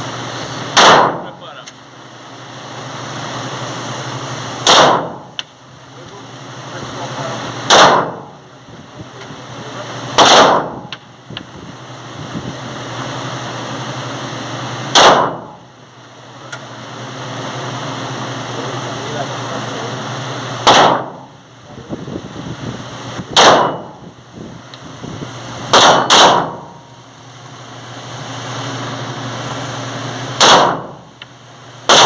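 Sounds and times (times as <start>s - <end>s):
pistol shots with echo: 0.8s - 1.3s, 4.6s - 5.2s, 7.7s - 8.2s, 10.2s - 10.9s, 15.0s - 15.4s, 20.6s - 21.1s, 23.4s - 23.9s, 25.7s - 26.6s, 30.4s - 30.9s.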